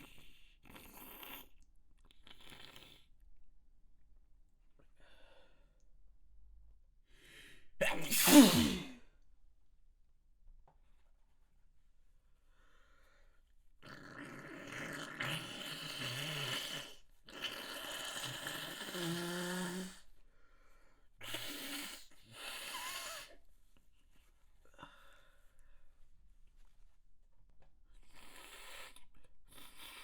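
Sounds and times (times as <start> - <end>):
person blowing nose: 7.9 - 8.9.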